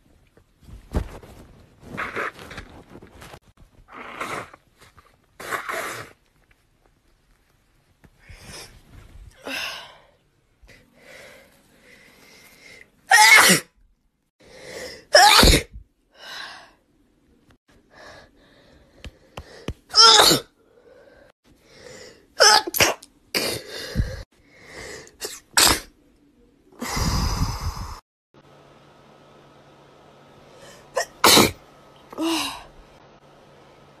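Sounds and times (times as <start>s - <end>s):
breathing: 9.4s - 12.9s, 14.4s - 15.1s, 17.9s - 19.8s, 20.6s - 22.3s, 23.7s - 25.1s
girl sneezing: 20.0s - 20.5s.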